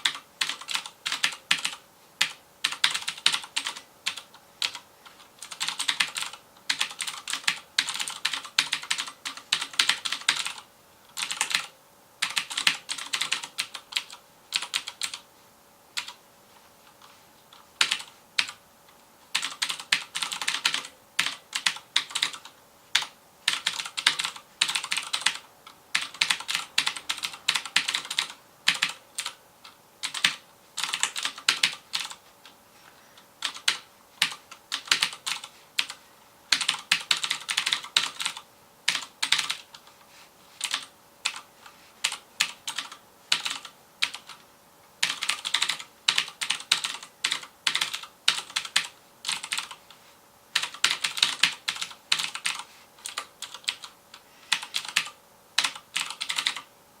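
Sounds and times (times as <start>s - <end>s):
clicky mechanical keyboard typing: 0.0s - 15.2s, 16.0s - 16.2s, 16.9s - 18.6s, 19.3s - 32.6s, 33.4s - 39.9s, 40.6s - 44.4s, 45.0s - 49.9s, 50.5s - 56.7s.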